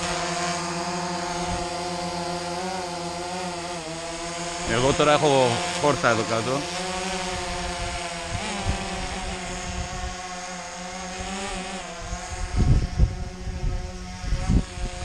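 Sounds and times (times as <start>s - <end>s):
drone propellers whining: 0.0s - 15.0s
wind buffeting microphone: 7.2s - 10.3s, 11.2s - 15.0s.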